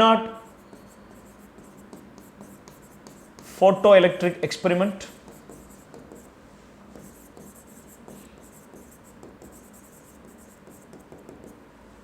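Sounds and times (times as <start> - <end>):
pen scratching while writing: 0.5 - 3.6, 5.1 - 6.3, 6.9 - 11.5.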